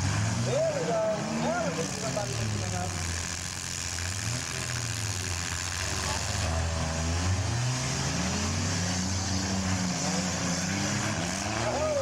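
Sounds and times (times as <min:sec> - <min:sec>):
crowd noise: 0:00.0 - 0:06.5
car engines revving: 0:00.0 - 0:12.0.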